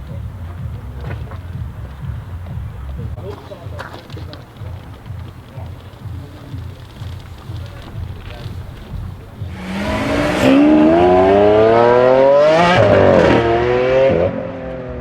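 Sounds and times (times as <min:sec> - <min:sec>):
car engine accelerating hard: 0:09.5 - 0:15.0.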